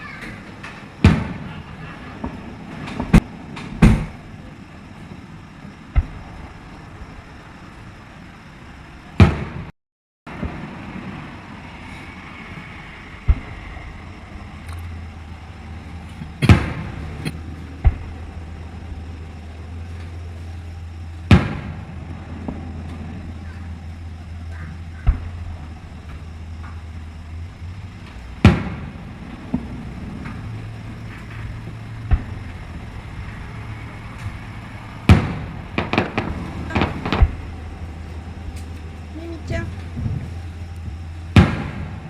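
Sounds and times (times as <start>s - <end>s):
steady low hum: 0.0s - 9.7s, 10.3s - 42.0s
fireworks exploding: 0.7s - 7.2s, 13.2s - 42.0s.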